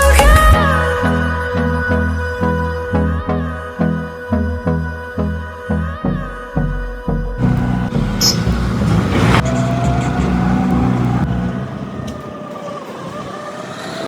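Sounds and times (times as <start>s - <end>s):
vehicle engine running: 7.4s - 12.4s.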